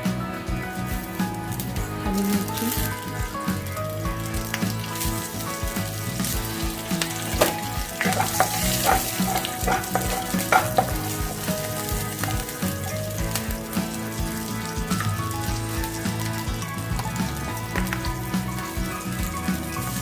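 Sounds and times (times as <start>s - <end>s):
seeds sizzling in hot oil: 0.0s - 20.0s
spoon knocking against pan: 7.4s - 11.5s.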